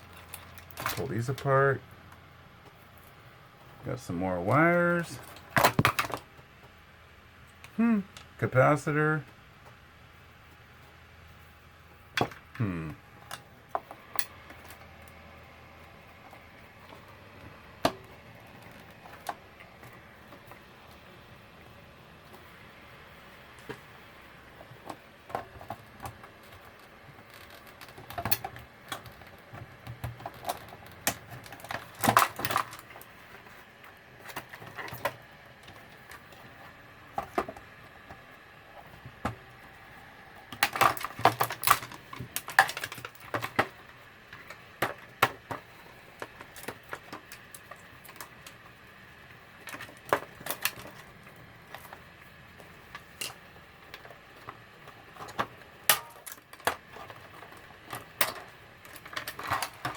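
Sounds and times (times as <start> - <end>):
small plastic parts clicking and rattling: 0.0 - 3.2, 4.0 - 6.4, 16.1 - 21.1, 24.6 - 59.9.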